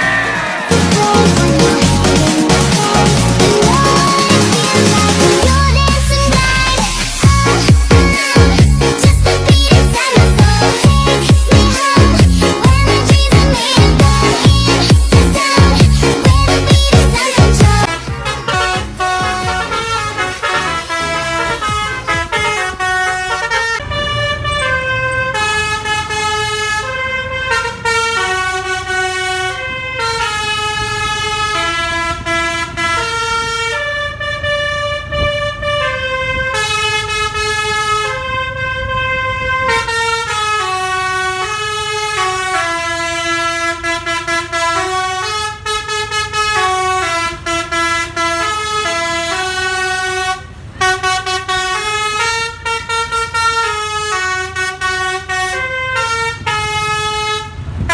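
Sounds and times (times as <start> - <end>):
bus air horn playing a tune: 0.0 - 57.9
steady low rumble: 13.4 - 36.6.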